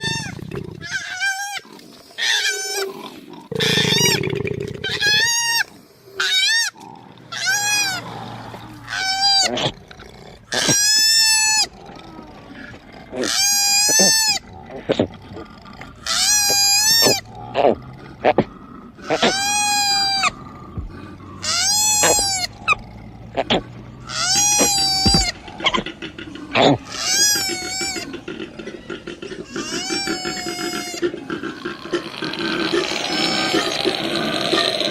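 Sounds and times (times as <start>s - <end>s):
koala squealing cries: 0.0s - 2.8s, 4.8s - 8.0s, 8.8s - 9.6s, 13.2s - 14.4s, 16.0s - 17.3s, 19.0s - 20.4s, 21.4s - 22.8s, 24.1s - 25.9s, 26.6s - 31.2s, 32.7s - 34.9s.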